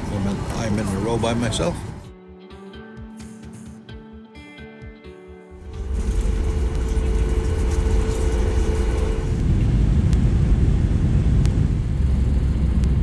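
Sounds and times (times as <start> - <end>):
jet engine and airflow rumble: 0.0 - 2.1, 5.6 - 13.0
steady whine: 5.6 - 13.0.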